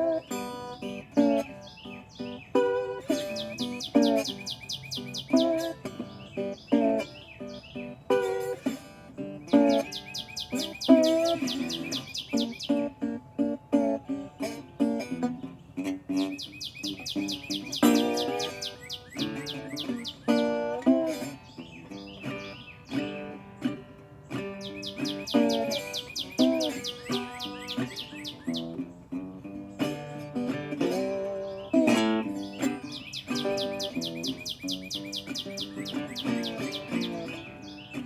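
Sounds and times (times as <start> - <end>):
acoustic guitar picking and strumming: 0.0 - 38.0
songbird trilling chirps: 0.0 - 38.0.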